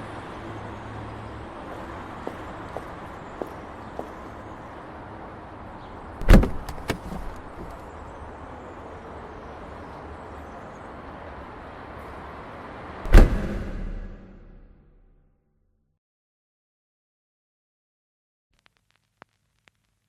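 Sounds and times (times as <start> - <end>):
loud thuds: 6.2 - 7.8, 13.1 - 14.8.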